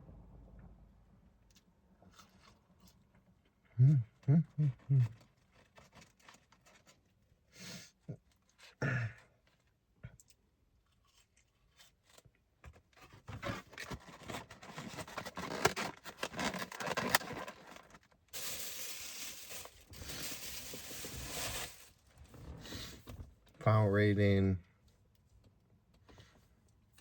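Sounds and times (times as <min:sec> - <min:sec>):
rustling and crinkling: 0:04.8 - 0:07.3, 0:10.8 - 0:23.6.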